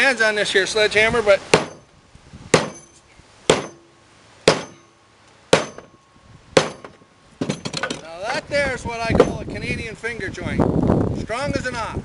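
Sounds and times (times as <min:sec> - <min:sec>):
sledgehammer striking wood: 0:01.5 - 0:01.9, 0:02.5 - 0:06.0, 0:06.6 - 0:08.1.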